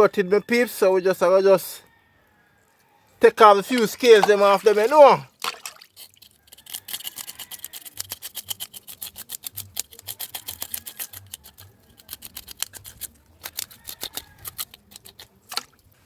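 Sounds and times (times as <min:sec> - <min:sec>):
scraping fish scales: 0:05.8 - 0:15.7.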